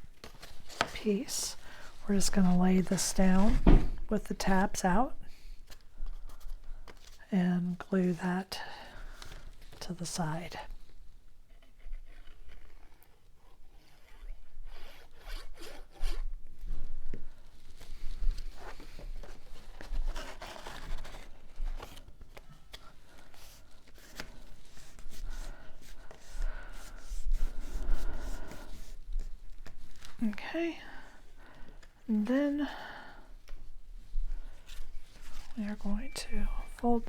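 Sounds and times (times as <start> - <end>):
paper rustling and rubbing: 17.6 - 30.2.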